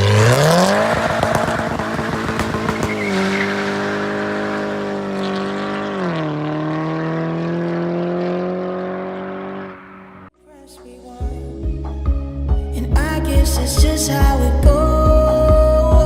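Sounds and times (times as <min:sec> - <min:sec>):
car engine at high revs: 0:00.0 - 0:10.3
exhaust crackles: 0:00.0 - 0:10.3.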